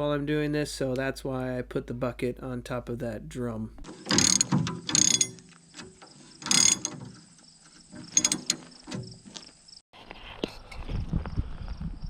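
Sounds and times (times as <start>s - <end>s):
metal clicking and clanking: 3.8s - 9.5s.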